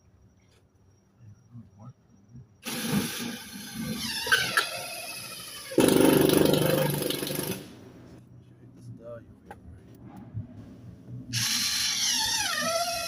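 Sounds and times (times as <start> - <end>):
drill motor whining: 2.6 - 7.7, 11.3 - 13.0.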